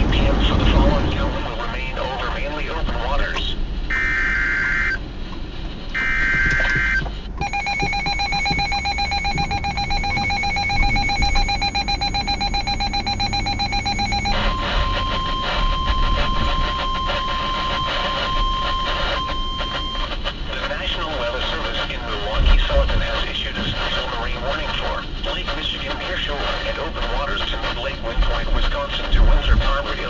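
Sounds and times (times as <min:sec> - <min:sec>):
steady warning tone: 0:00.0 - 0:05.0, 0:05.9 - 0:30.0
fast warbling alarm beeps: 0:00.2 - 0:05.0, 0:06.0 - 0:20.1
screeching data bursts: 0:06.0 - 0:20.1.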